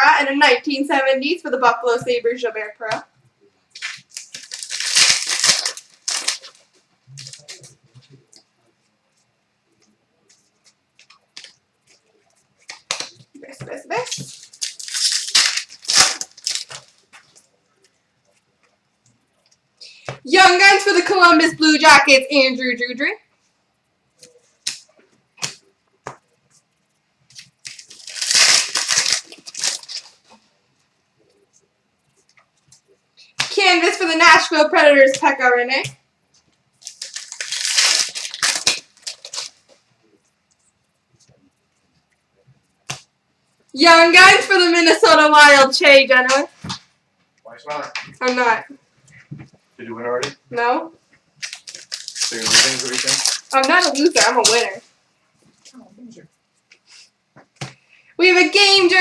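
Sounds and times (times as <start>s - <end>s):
wrapper ripping: 3.8s - 7.8s, 14.0s - 17.2s, 27.3s - 30.4s, 36.8s - 39.8s, 51.4s - 54.8s
wrapper crinkling: 3.8s - 8.3s, 12.6s - 17.5s, 27.3s - 30.4s, 36.8s - 39.8s, 51.4s - 54.9s.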